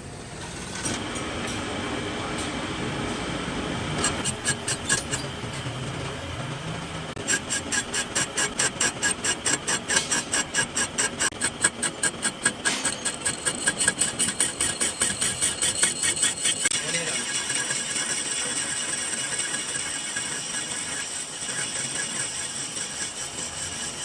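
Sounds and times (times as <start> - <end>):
lathe humming: 1.0 - 24.0
rapid metallic ticking: 4.0 - 5.4, 7.2 - 24.0.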